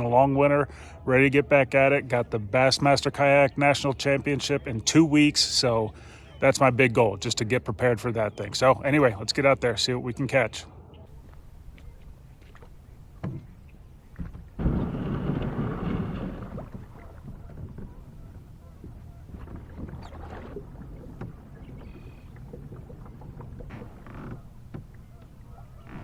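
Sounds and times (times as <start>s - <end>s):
low rumbling noise: 10.7s - 26.0s
hull and paddle knocks: 13.2s - 26.0s.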